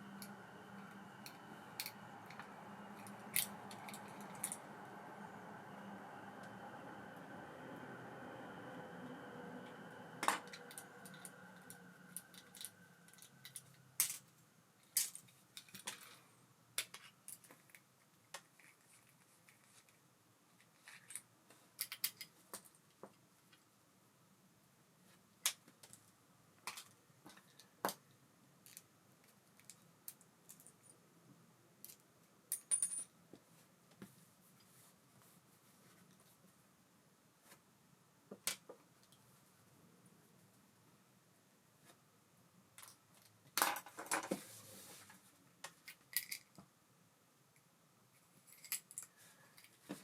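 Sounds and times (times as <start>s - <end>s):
faint whir: 0.0s - 14.0s
small metal parts clicking: 10.6s - 16.2s, 45.8s - 46.6s.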